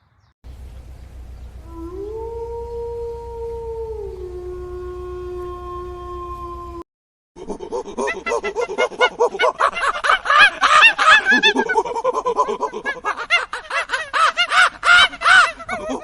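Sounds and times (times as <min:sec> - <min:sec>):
animals calling rapidly: 0:07.4 - 0:16.0.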